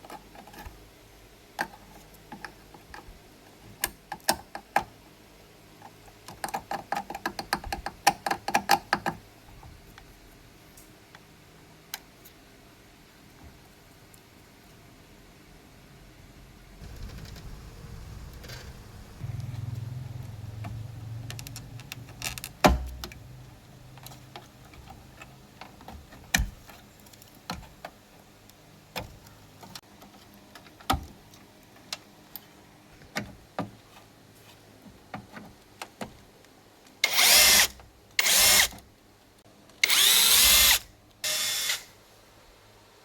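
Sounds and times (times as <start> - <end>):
power drill running: 37.0 - 38.7, 39.8 - 41.9.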